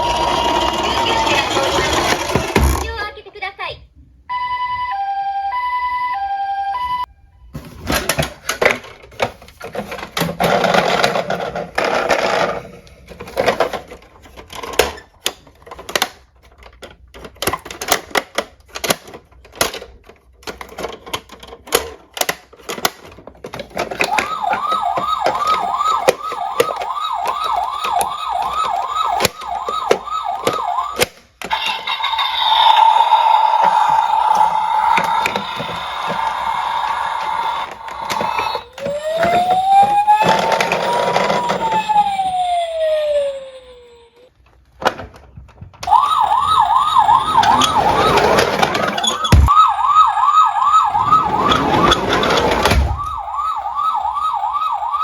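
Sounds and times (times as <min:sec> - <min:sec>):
electronic siren wailing: 0:00.0 - 0:02.4, 0:24.0 - 0:31.0, 0:31.6 - 0:44.3, 0:45.8 - 0:55.0
toy cars clattering on hard surface: 0:00.0 - 0:03.0, 0:07.9 - 0:39.5.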